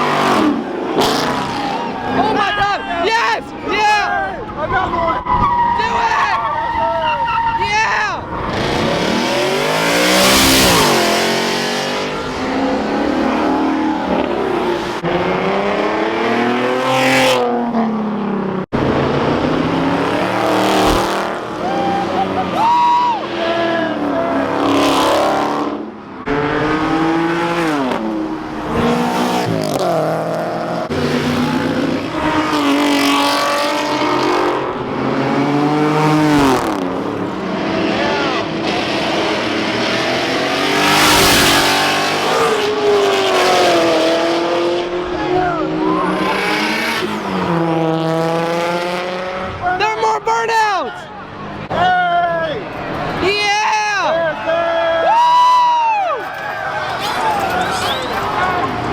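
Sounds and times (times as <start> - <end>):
car engines revving past: 0.0 - 2.4, 8.2 - 49.9.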